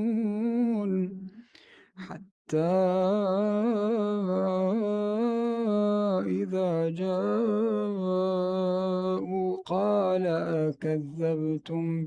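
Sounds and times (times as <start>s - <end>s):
man reciting melodically: 2.5s - 12.0s.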